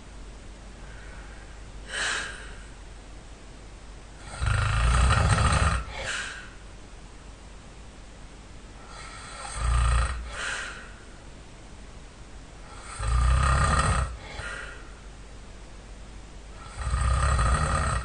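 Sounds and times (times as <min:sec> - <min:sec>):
soft breaths: 0:00.7 - 0:02.8, 0:05.1 - 0:06.7, 0:10.2 - 0:11.3, 0:14.1 - 0:15.1
loud rattling snore: 0:04.2 - 0:06.1, 0:08.9 - 0:10.4, 0:12.7 - 0:14.4, 0:16.6 - 0:18.0.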